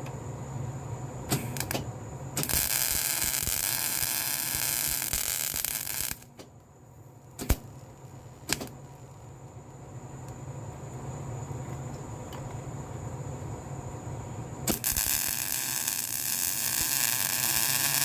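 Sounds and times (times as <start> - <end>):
steady background hum: 0.0 - 18.0
arc welding crackling: 1.3 - 6.5, 7.3 - 9.3, 14.6 - 18.0
sharp clicks and knocks: 8.4 - 8.8.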